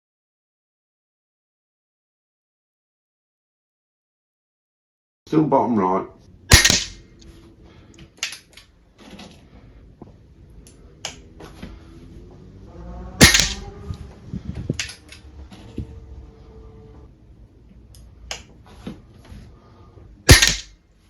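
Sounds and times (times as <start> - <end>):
air rifle shot crack: 6.5 - 7.2, 13.2 - 13.6, 20.3 - 20.8
rifle handling clicks: 8.2 - 8.7.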